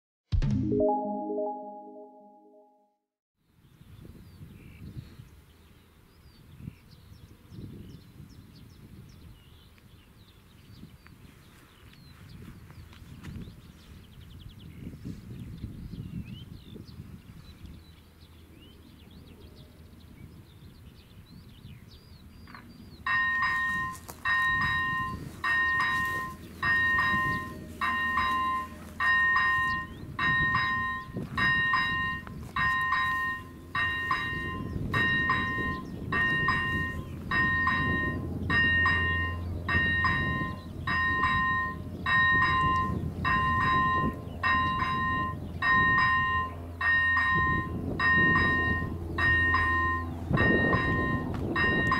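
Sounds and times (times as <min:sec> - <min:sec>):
low train rumble: 0:22.6 - 0:51.9
electronic crossing warning bell: 0:23.1 - 0:51.9.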